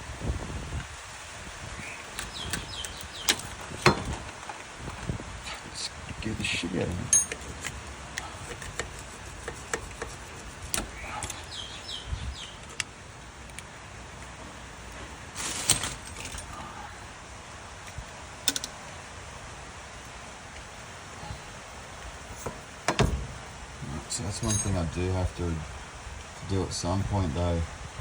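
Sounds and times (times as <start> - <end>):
metal hand tools clinking: 7.1 - 9.0, 22.4 - 25.2
tools clattering: 7.1 - 11.4, 15.4 - 16.6, 22.3 - 25.0.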